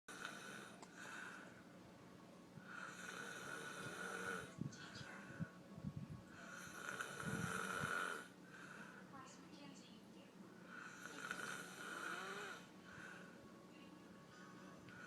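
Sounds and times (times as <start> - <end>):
man snoring: 0.1 - 0.8, 2.7 - 4.5, 6.5 - 8.3, 10.8 - 12.7.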